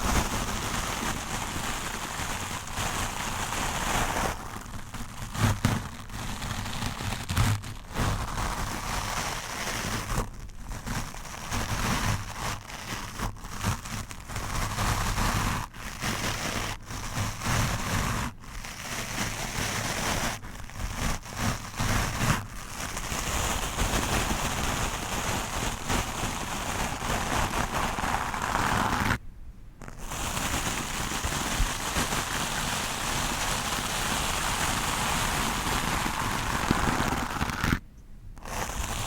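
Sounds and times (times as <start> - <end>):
brush scrubbing against microphone: 19.2 - 29.2.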